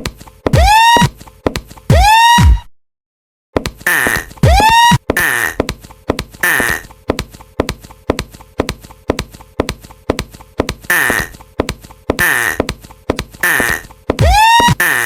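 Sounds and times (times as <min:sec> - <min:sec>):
clip-clop knocking: 0:03.6 - 0:15.0.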